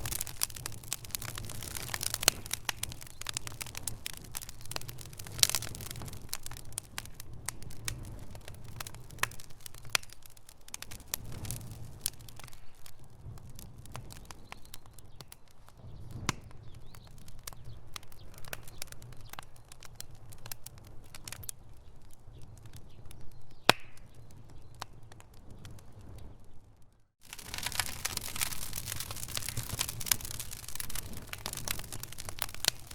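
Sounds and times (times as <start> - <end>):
fire crackling and popping: 0.0 - 32.9.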